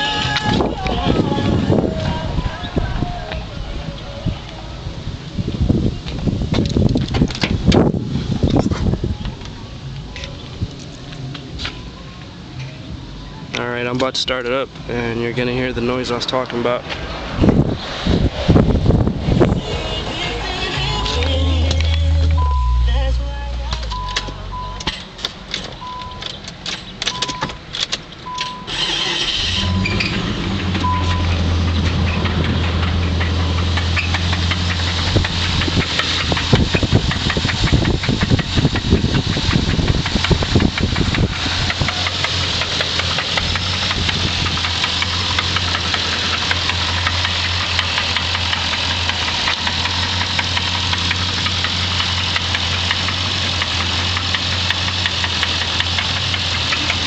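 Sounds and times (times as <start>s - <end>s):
car engine cranking and idling: 0.0s - 57.0s
warning chime beeping: 19.6s - 24.9s, 30.8s - 31.3s
engine knocking: 30.7s - 57.0s.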